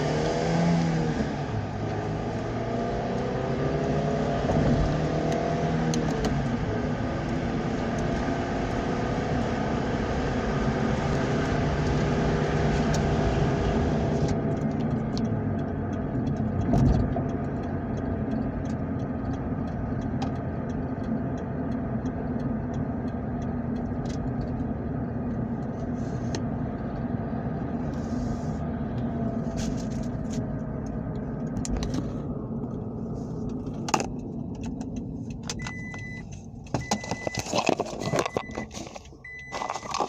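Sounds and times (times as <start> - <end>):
car engine running: 0.0 - 40.0
car warning chime beeping: 35.5 - 40.0.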